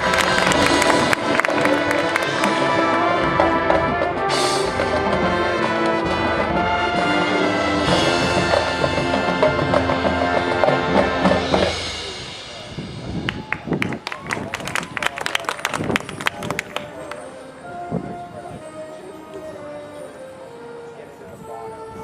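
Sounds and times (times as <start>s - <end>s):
marching band brass chords: 0.0s - 14.9s
drums: 0.0s - 17.0s.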